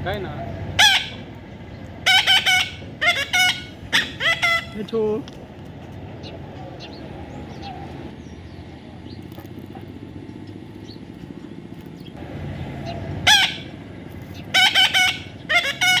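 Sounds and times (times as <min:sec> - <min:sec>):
low background hum: 0:00.0 - 0:16.0
parrot squawking: 0:00.4 - 0:01.3, 0:02.0 - 0:04.8, 0:12.8 - 0:16.0.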